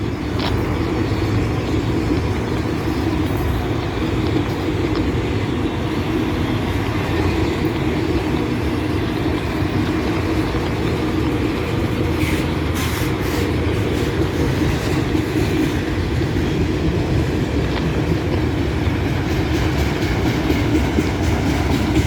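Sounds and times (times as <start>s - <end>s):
freight train rolling past: 0.0s - 22.0s.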